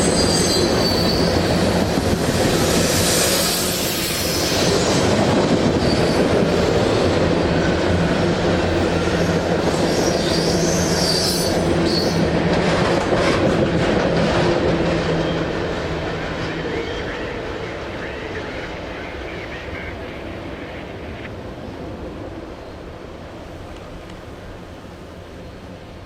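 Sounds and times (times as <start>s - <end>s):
high wheel squeals: 0.0s - 1.4s, 9.0s - 12.2s.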